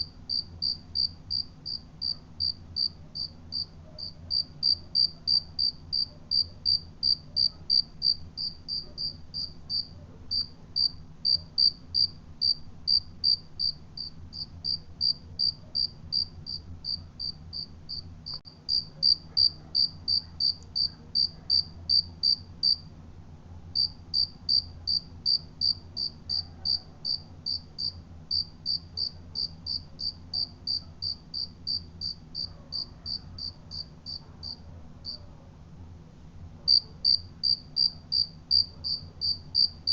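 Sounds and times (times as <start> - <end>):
cricket chirping: 0.0 - 22.8, 23.8 - 35.2, 36.7 - 39.9.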